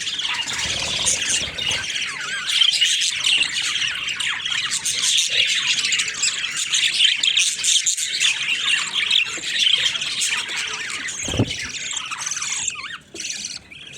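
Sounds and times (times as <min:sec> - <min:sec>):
budgerigars chattering and squawking: 0:00.0 - 0:13.9
dull thump: 0:11.2 - 0:11.8.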